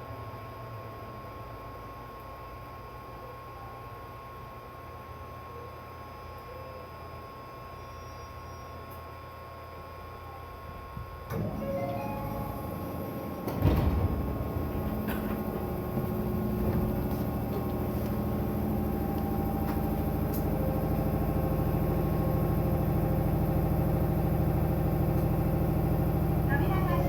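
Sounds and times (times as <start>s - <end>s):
sliding door shutting with thud: 11.3s - 18.3s
electric train pulling away: 11.3s - 27.0s.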